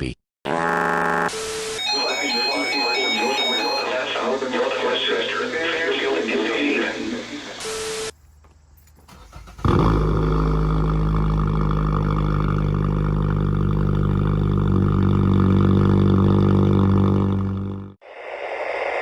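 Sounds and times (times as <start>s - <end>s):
buzzy radio alarm tone: 0.8s - 8.2s.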